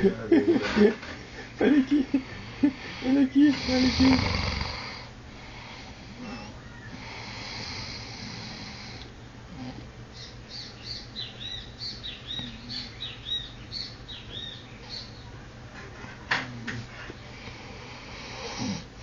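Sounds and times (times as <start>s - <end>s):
soft breathy hiss: 2.3s - 9.8s, 16.8s - 19.0s.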